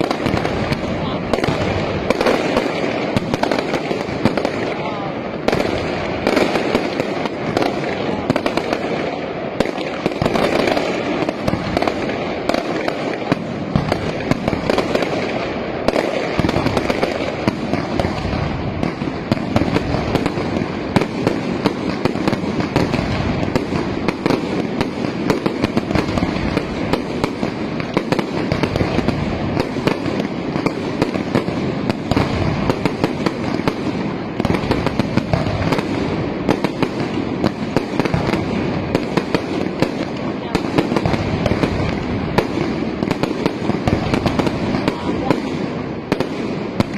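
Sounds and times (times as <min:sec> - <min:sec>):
fireworks bangs and crackling: 0:00.0 - 0:46.9.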